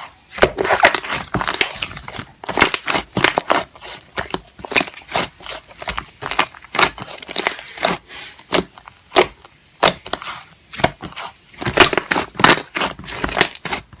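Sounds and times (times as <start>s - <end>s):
slime crackling pops: 6.2s - 10.2s.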